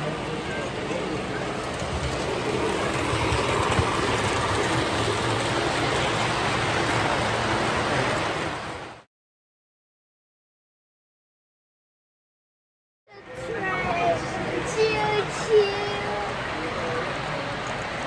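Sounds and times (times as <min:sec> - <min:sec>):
model trains running on track: 0:00.0 - 0:09.1, 0:13.1 - 0:18.0.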